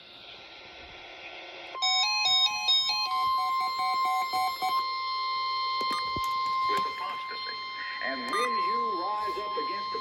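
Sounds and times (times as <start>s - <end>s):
short electronic beeps: 5.8s - 10.0s
steady electronic alert tone: 5.8s - 10.0s.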